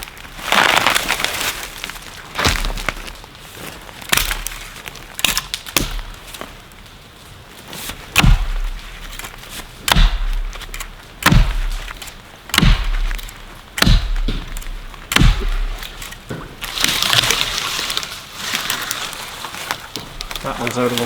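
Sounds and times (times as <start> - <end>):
branches rustling: 0.0 - 21.0
axe chopping tree: 2.4 - 2.9, 4.1 - 4.6, 5.2 - 6.2, 8.1 - 17.2.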